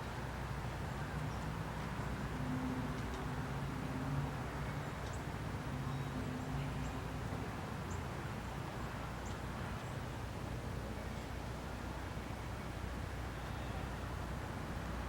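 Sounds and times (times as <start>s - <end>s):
low rumble and hiss: 0.0s - 15.0s.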